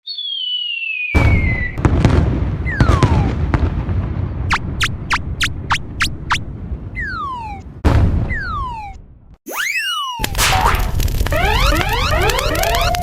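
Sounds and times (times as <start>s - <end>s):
whistle falling in pitch: 0.0s - 1.8s, 7.0s - 7.6s, 8.3s - 10.6s
rumbling cartoon explosion: 1.2s - 9.2s
sharp high zips: 9.5s - 13.0s.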